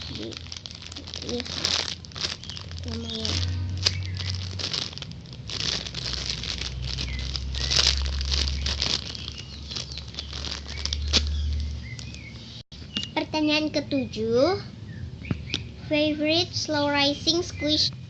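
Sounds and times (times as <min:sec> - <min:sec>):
squishy toy rustling and crinkling: 0:00.0 - 0:12.4.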